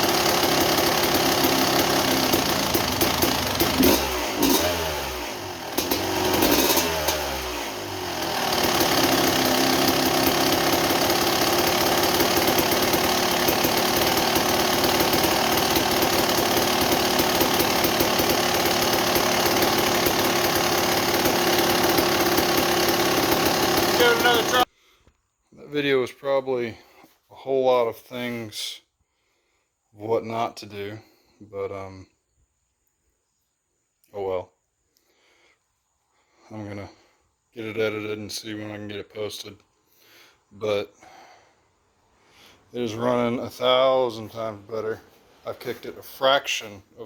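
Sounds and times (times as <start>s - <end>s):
two-stroke engine idling: 0.0s - 24.7s.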